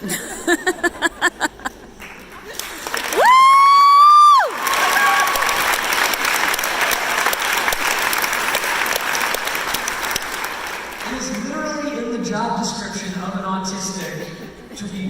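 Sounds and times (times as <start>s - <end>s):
audience applauding: 1.9s - 11.5s.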